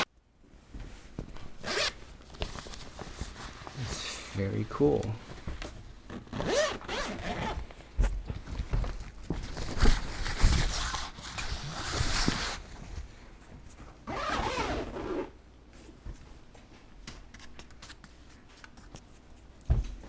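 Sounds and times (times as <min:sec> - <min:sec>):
fabric rustling: 0:00.5 - 0:03.9
bag zipper being pulled: 0:01.6 - 0:01.9, 0:06.2 - 0:07.6, 0:14.1 - 0:15.3.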